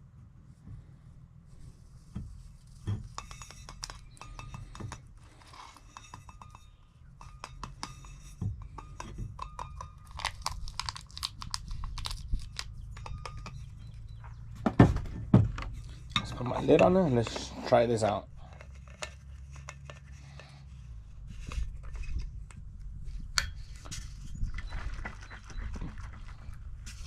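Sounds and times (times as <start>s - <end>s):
coffee cup clicks and scrapes: 2.8s - 14.2s, 18.4s - 20.7s
steady low rumble: 20.7s - 27.0s.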